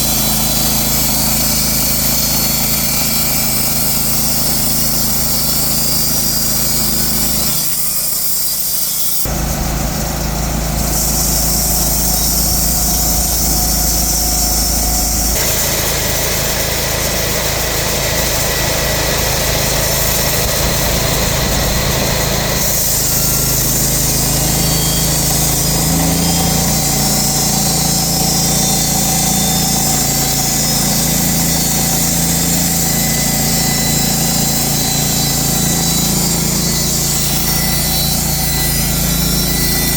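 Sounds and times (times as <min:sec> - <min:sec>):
sawmill mechanical drone: 0:00.0 - 0:39.9.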